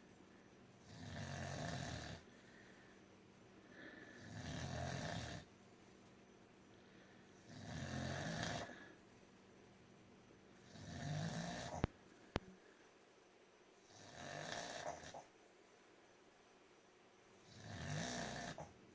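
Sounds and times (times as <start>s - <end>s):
dog snoring loudly: 0.8s - 2.3s, 4.2s - 5.5s, 7.4s - 8.8s, 10.6s - 11.9s, 13.8s - 15.3s, 17.4s - 18.8s.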